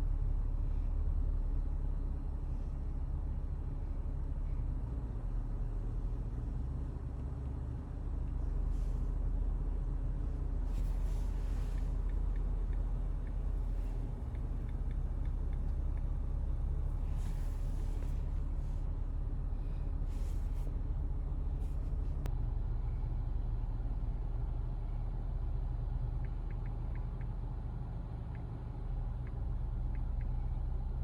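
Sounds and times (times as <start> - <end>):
car cabin rumble: 10.0 - 22.3.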